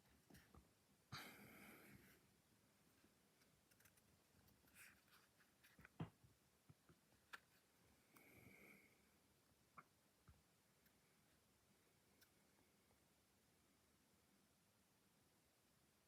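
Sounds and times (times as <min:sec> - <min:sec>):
soft rustle: 0:01.8 - 0:06.1.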